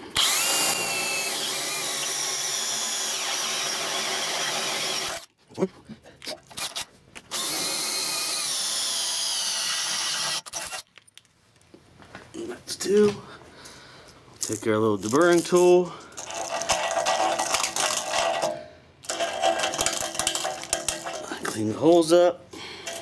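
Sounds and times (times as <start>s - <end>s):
power drill drilling through steel: 0.2s - 5.3s, 6.7s - 10.8s.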